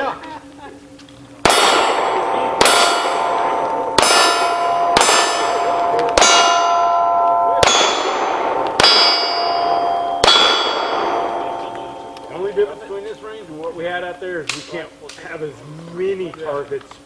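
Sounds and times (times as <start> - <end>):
pistol shots: 1.4 - 12.9
steel target plate clanging: 1.5 - 13.2.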